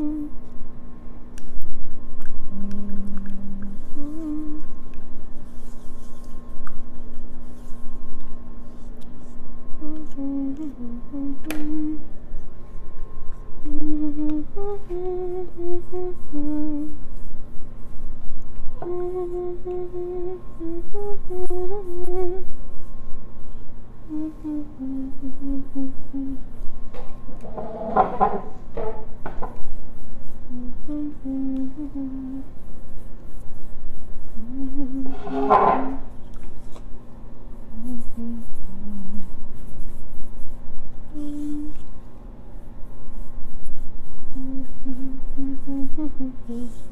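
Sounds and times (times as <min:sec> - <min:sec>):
person humming a slow tune: 0:00.0 - 0:00.6, 0:02.2 - 0:05.6, 0:09.6 - 0:18.0, 0:18.6 - 0:23.0, 0:24.0 - 0:26.8, 0:27.4 - 0:36.3, 0:37.6 - 0:42.0, 0:43.0 - 0:46.9
steady low hum: 0:00.0 - 0:46.9
paintbrush scratching: 0:03.7 - 0:09.5, 0:27.4 - 0:30.6, 0:32.4 - 0:36.8, 0:37.5 - 0:41.9, 0:42.6 - 0:46.9.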